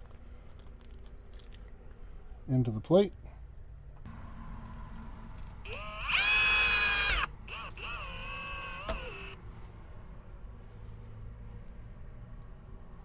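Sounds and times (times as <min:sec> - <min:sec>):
cordless drill motor whine: 0:05.7 - 0:09.4
drill click: 0:05.7 - 0:09.4.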